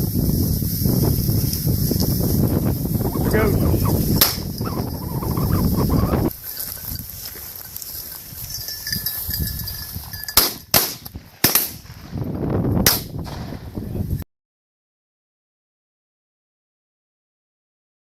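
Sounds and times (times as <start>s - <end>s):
wind: 0.0s - 14.3s
rustling: 0.3s - 10.4s
shotgun shots: 4.2s - 4.5s, 10.4s - 12.2s, 12.8s - 13.8s.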